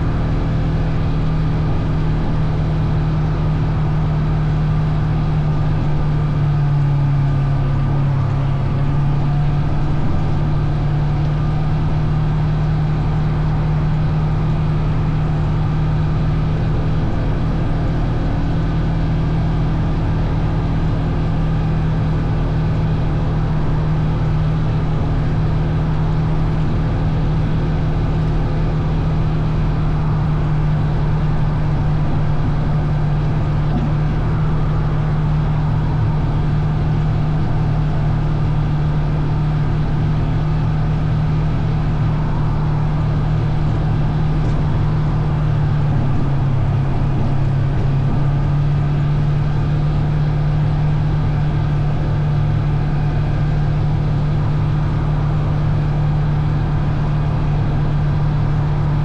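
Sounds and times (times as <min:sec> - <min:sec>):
vehicle engine running: 0:00.0 - 0:59.0.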